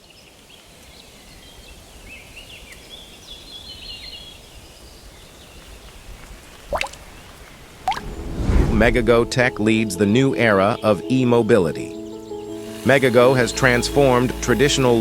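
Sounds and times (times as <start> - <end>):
faint low rumble: 7.8 - 9.6.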